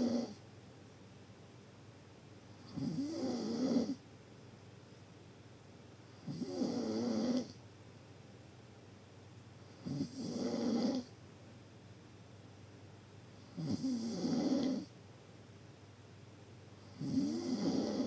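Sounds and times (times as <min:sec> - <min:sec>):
deep snoring: 0:00.0 - 0:00.4, 0:02.7 - 0:04.0, 0:06.2 - 0:07.6, 0:09.8 - 0:11.1, 0:13.5 - 0:14.9, 0:16.9 - 0:18.0.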